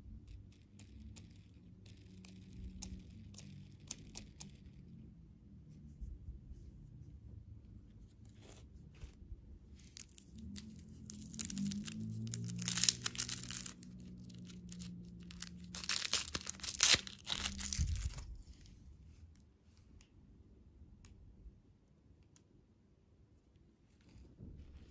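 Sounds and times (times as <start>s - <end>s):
candy packaging crinkling: 9.8s - 18.6s.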